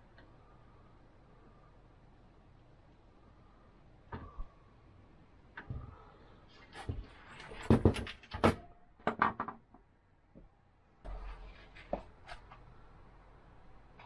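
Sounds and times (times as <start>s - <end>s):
computer parts clicking and knocking: 7.4s - 9.7s.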